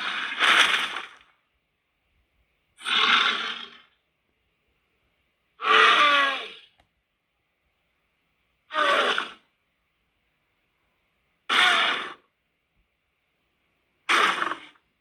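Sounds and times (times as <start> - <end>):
monster hoarse breathy calls: 2.8 - 3.9, 5.6 - 6.7, 8.7 - 9.4, 11.5 - 12.2, 14.1 - 14.8.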